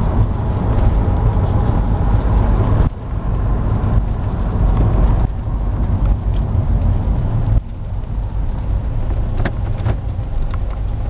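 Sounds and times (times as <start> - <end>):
car engine rumble: 0.0 - 11.0.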